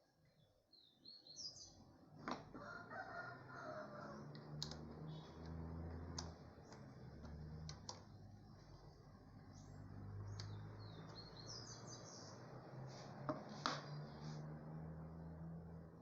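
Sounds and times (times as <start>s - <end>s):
birds chirping: 0.2s - 1.8s, 4.8s - 14.4s
sharp clicks: 4.3s - 8.1s.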